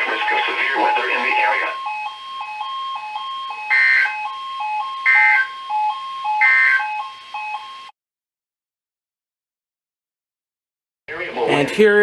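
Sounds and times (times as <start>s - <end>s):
digital data bursts: 0.0s - 1.8s
two-tone radio alert alarm: 0.0s - 7.9s.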